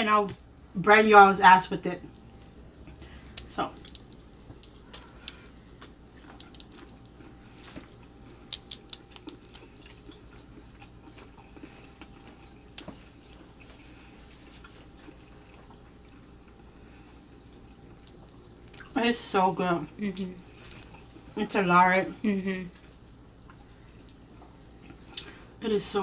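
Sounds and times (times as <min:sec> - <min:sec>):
chewing and mouth noises: 0:02.0 - 0:19.0, 0:19.9 - 0:21.4, 0:22.7 - 0:25.5.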